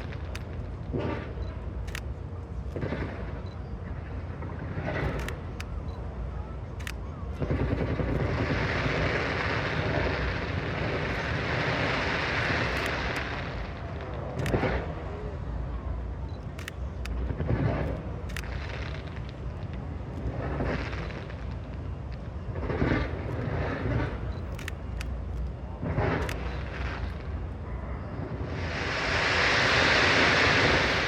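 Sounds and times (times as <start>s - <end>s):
fireworks crackling bursts: 0.0s - 3.4s, 4.0s - 5.9s, 6.6s - 15.2s, 16.4s - 27.6s, 28.2s - 31.0s
fireworks bangs: 2.8s - 3.4s, 7.4s - 15.0s, 17.1s - 24.3s, 25.1s - 27.5s, 28.2s - 31.0s.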